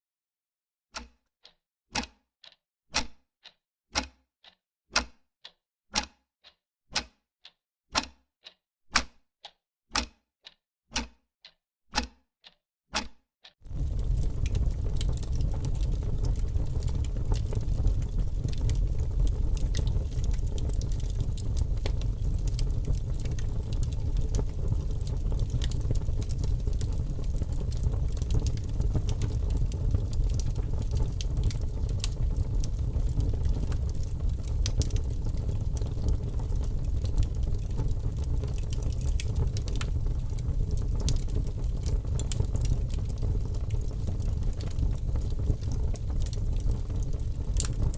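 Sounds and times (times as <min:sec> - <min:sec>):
fire flames rumbling: 0:13.7 - 0:47.9
wood crackling and popping: 0:13.7 - 0:47.9.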